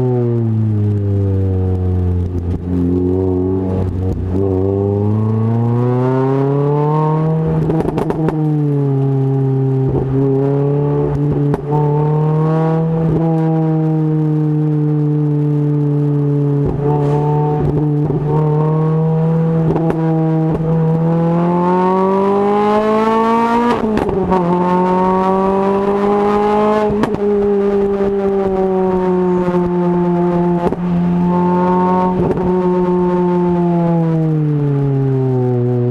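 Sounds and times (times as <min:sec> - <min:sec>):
exhaust clicks and crackles: 0:00.0 - 0:21.8, 0:23.6 - 0:35.9
car engine revving: 0:00.0 - 0:35.9.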